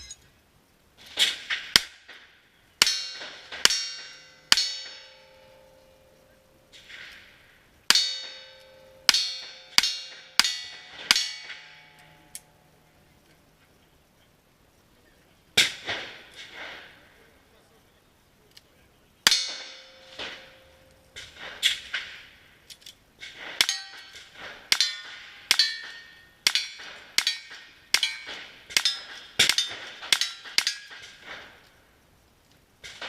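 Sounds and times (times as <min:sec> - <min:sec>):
steel targets ringing: 0:00.0 - 0:00.3, 0:02.8 - 0:13.0, 0:19.2 - 0:22.4, 0:23.5 - 0:31.4.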